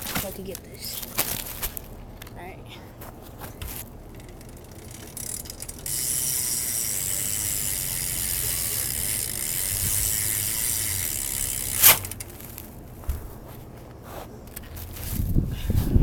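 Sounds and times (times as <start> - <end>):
bike hub ratcheting: 3.6 - 12.8.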